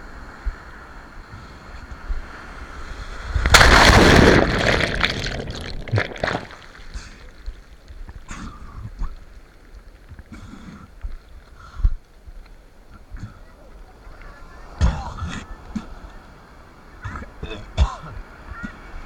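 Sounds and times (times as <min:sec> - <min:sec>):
surf splashing and rushing: 0:01.3 - 0:07.7.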